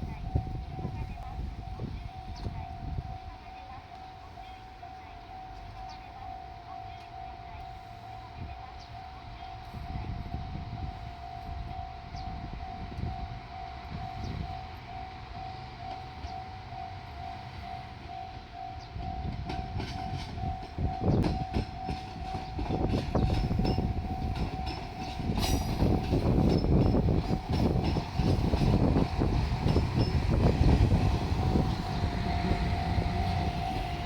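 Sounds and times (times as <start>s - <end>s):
diesel railcar rumbling: 0.0s - 34.0s
level-crossing warning bell ringing: 0.0s - 34.0s
train wheels clacking over rail joints: 19.0s - 34.0s.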